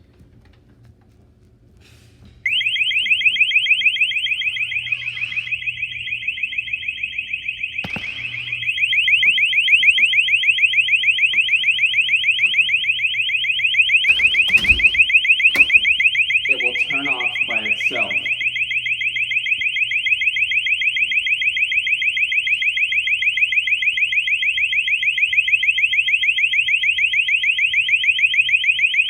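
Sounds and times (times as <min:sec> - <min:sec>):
door alarm warbling: 0:02.4 - 0:29.0
sharp knocks: 0:14.0 - 0:16.1.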